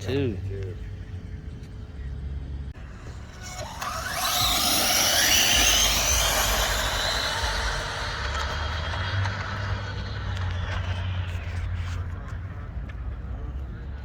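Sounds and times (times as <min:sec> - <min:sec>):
electric motor whine: 0:02.8 - 0:12.4.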